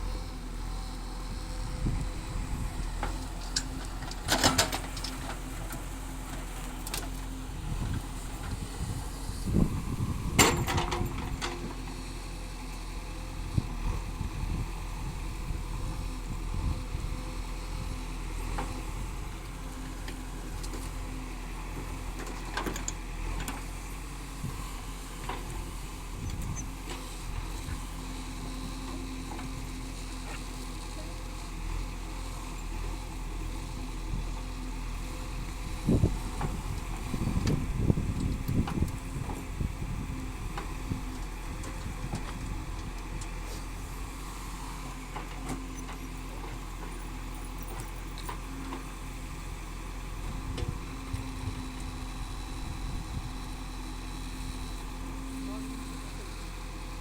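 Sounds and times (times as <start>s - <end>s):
diesel engine running: 0.0s - 57.0s.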